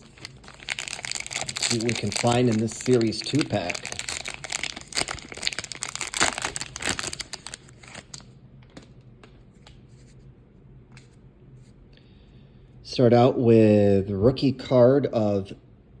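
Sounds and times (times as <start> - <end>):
plastic wrapper tearing and crinkling: 0.0 - 8.8.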